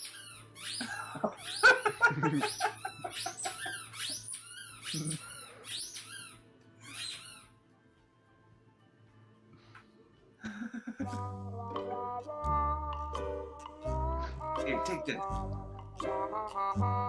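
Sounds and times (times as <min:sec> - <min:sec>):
dog whining: 0:00.0 - 0:06.3.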